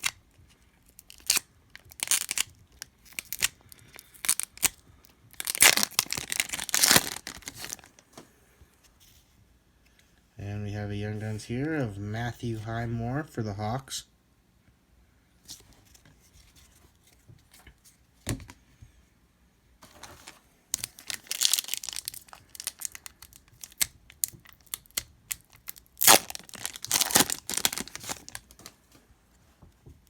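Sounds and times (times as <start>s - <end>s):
card pack wrapper tearing: 0.9s - 8.0s, 20.7s - 28.7s.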